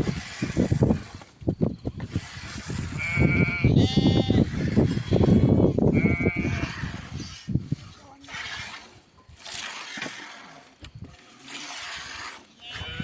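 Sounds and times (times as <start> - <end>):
goats and sheep bleating: 3.0 - 6.8, 12.6 - 13.0.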